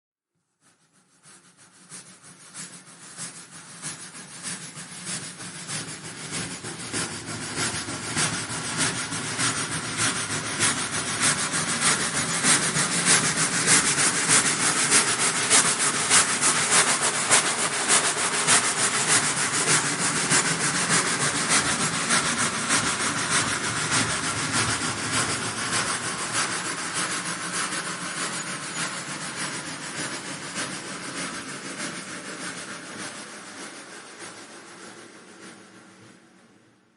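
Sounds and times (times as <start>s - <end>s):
steam train chuffing: 1.3s - 36.7s
steam hiss: 1.7s - 36.2s.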